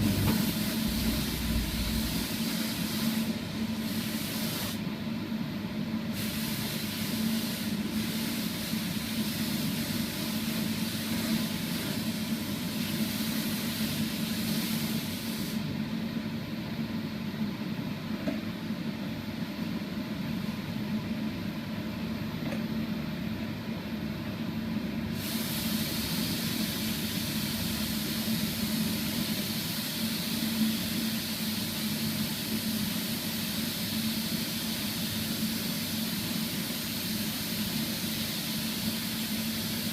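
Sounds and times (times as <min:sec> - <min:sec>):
low machine hum: 0:00.0 - 0:02.5
air spray gun hissing: 0:00.0 - 0:04.9, 0:06.1 - 0:15.7, 0:25.1 - 0:39.9.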